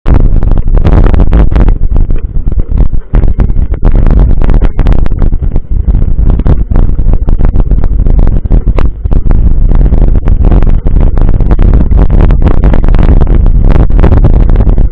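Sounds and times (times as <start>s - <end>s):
wind buffeting microphone: 0.0s - 14.9s.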